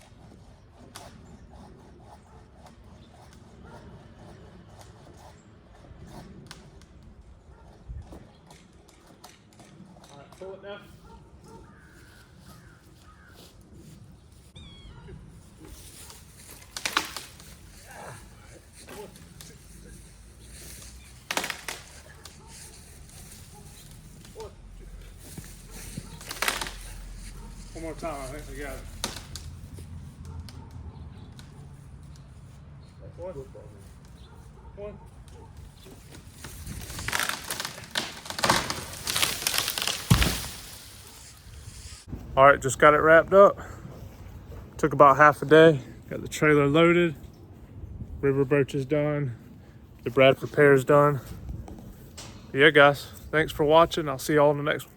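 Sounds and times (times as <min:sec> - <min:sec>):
tree branches rustling: 0:10.8 - 0:30.4, 0:31.3 - 0:45.4
high mewing animal calls: 0:14.6 - 0:15.3.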